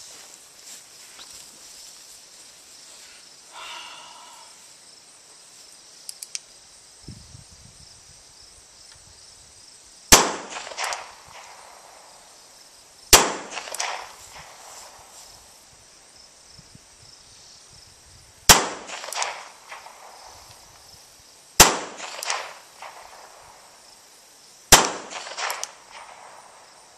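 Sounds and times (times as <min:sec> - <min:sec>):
insects chirring: 0:00.0 - 0:26.9
faint clicks: 0:06.0 - 0:06.5
revolver gunshots: 0:10.1 - 0:11.8, 0:13.1 - 0:14.5, 0:18.5 - 0:20.2, 0:21.6 - 0:23.4, 0:24.7 - 0:26.6
gunshot echo: 0:10.1 - 0:11.9, 0:13.1 - 0:14.6, 0:18.5 - 0:20.3, 0:21.6 - 0:23.4, 0:24.7 - 0:26.6.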